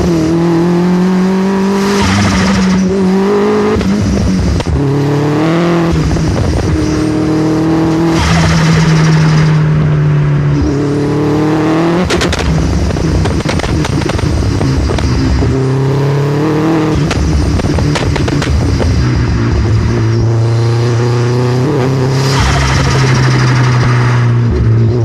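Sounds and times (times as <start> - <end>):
car engine accelerating through gears: 0.0 - 25.0
exhaust pops and crackles: 12.1 - 15.3, 17.0 - 19.0.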